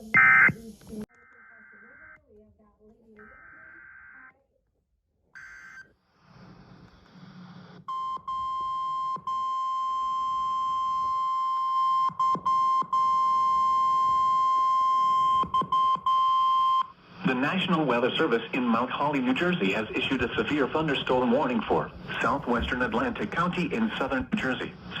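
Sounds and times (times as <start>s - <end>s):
steady warning alarm tone: 0.0s - 0.6s, 7.9s - 17.0s
radio hiss: 16.9s - 25.0s.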